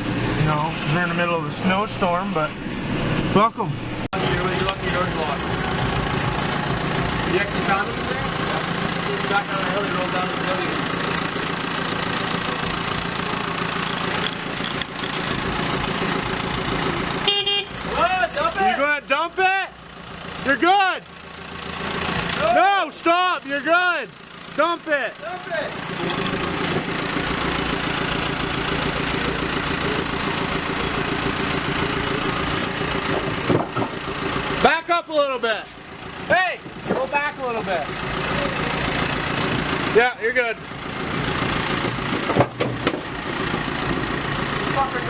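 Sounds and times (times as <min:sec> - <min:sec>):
vehicle engine running: 0:00.0 - 0:45.0.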